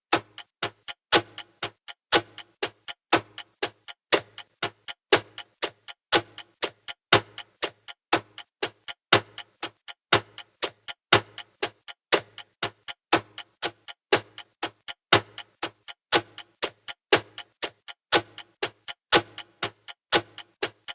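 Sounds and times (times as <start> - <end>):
clock ticking: 0.1 - 20.9.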